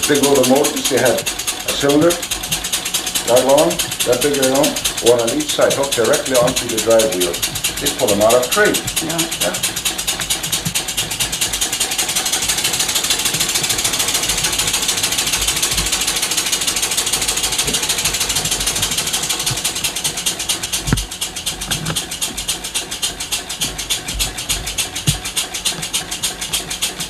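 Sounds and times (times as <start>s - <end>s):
model steam engine exhaust puffing: 0.0s - 27.0s.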